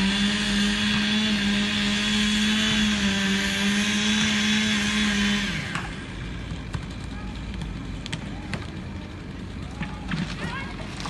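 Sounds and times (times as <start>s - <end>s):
chainsaw running at high revs: 0.0s - 6.6s.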